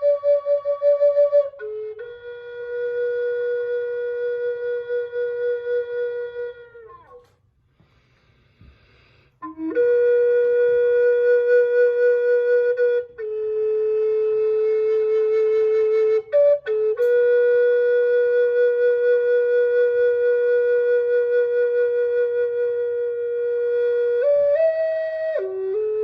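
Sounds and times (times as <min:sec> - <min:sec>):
flute playing long notes: 0:00.0 - 0:07.4, 0:08.8 - 0:26.0.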